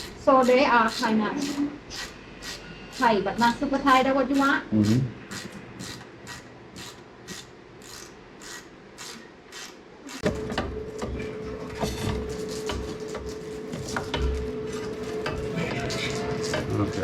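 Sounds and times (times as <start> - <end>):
steady hum: 0.0 - 17.0
hand tool scraping: 4.9 - 10.4.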